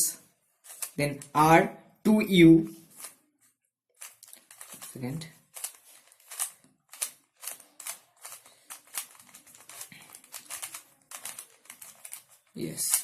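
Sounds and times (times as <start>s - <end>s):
puzzle cube layers clicking: 0.7s - 1.5s, 4.0s - 13.0s.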